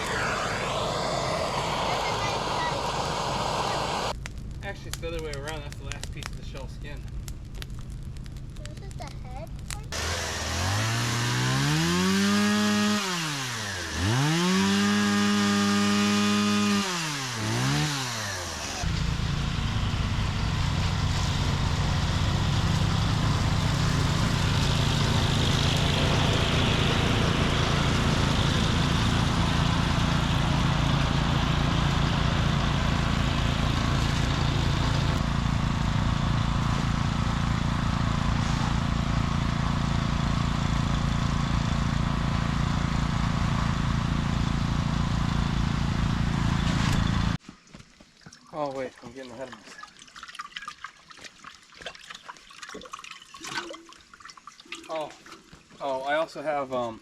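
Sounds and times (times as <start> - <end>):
chainsaw revving: 0.0 - 4.1, 9.9 - 46.6.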